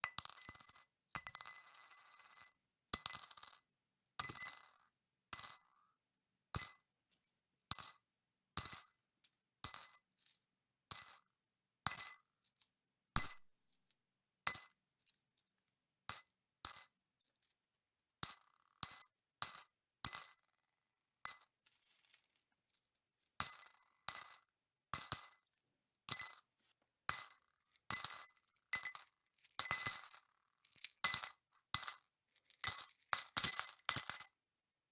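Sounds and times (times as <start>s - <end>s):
coins clinking into a bowl: 32.6s - 34.3s.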